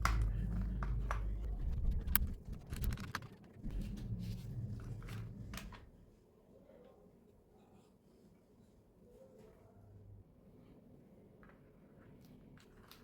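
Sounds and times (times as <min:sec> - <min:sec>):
low hum: 0:00.0 - 0:06.3.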